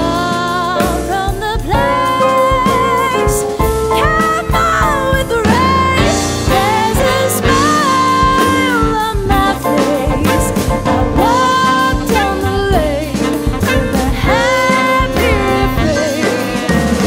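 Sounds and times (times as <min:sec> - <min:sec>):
jazz band playing swing: 0:00.0 - 0:17.0.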